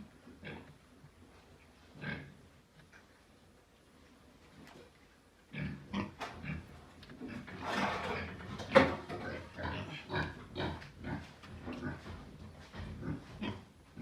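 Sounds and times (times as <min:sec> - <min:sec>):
pigs grunting: 0:02.0 - 0:02.4, 0:05.5 - 0:14.0.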